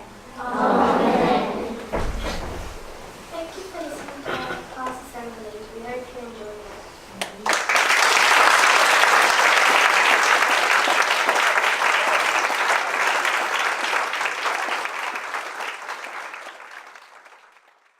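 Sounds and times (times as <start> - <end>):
audience applauding: 7.2 - 17.9.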